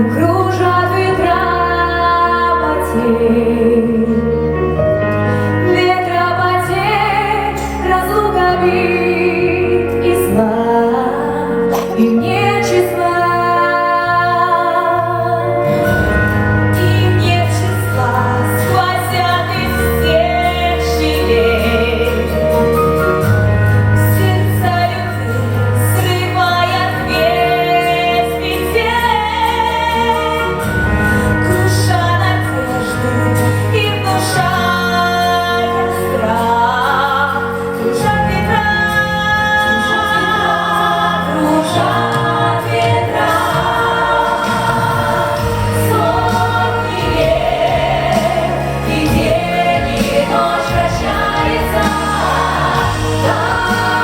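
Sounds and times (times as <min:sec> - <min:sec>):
vocal ensemble singing: 0:00.0 - 0:04.5, 0:05.5 - 0:54.0
instrumental accompaniment: 0:00.0 - 0:54.0
deep bass line: 0:38.0 - 0:54.0.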